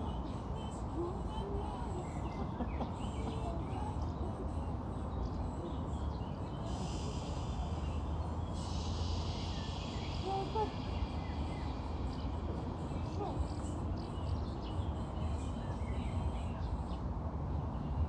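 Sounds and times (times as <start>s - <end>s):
faint bird chirps: 0.0s - 17.1s
high even hiss: 6.6s - 13.3s.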